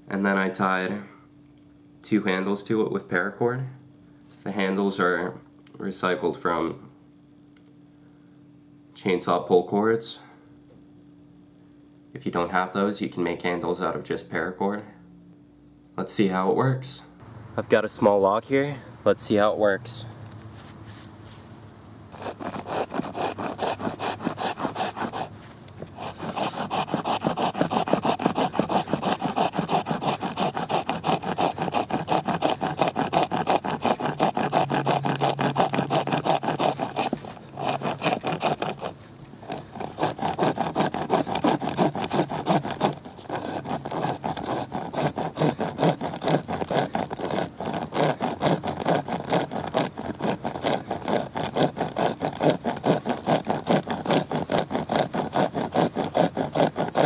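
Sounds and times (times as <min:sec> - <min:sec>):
hand chainsaw rasping through wood: 0:22.1 - 0:57.0.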